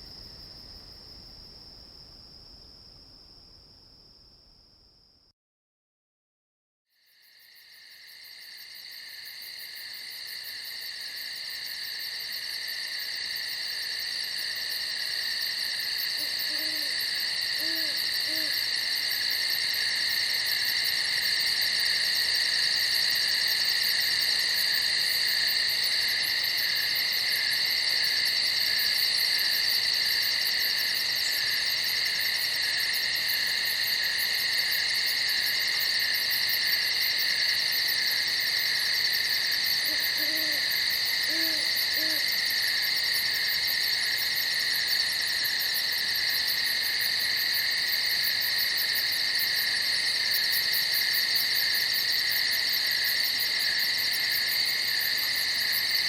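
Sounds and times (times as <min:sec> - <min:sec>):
crickets chirping: 0:00.0 - 0:05.3, 0:06.9 - 0:56.0
faint low hoots: 0:16.2 - 0:17.0, 0:17.6 - 0:18.6, 0:39.9 - 0:42.3.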